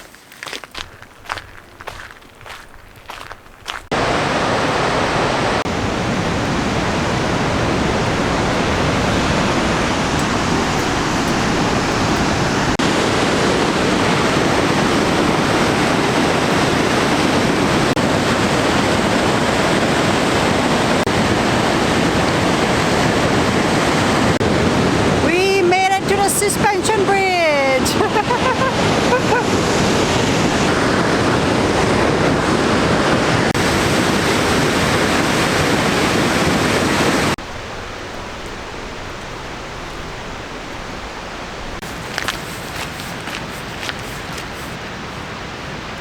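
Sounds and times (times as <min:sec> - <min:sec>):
quiet footsteps: 0:00.0 - 0:03.9, 0:08.0 - 0:12.8, 0:41.8 - 0:45.3
river running: 0:00.0 - 0:46.0
waterfall rushing: 0:03.9 - 0:25.3, 0:28.0 - 0:46.0.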